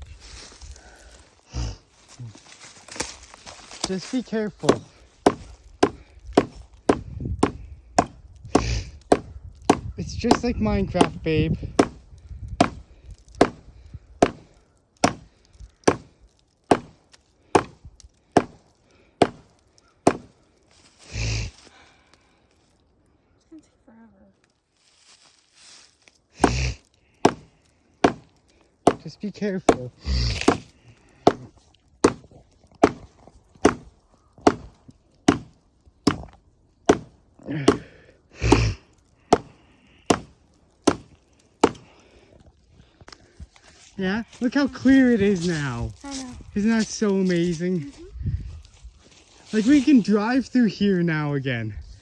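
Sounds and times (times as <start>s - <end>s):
hatchet chopping wood: 4.6s - 20.4s, 26.4s - 42.0s.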